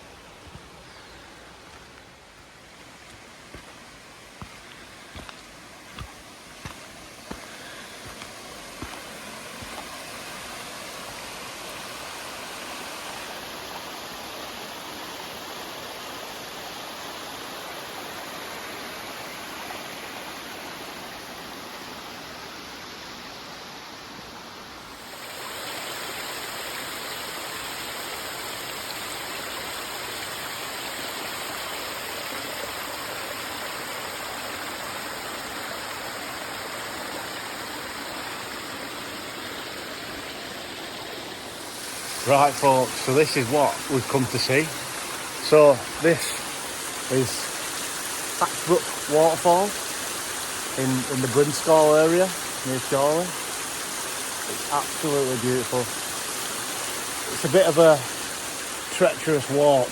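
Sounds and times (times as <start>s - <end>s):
waterfall rushing: 0.0s - 59.9s
brook rushing: 41.4s - 49.8s.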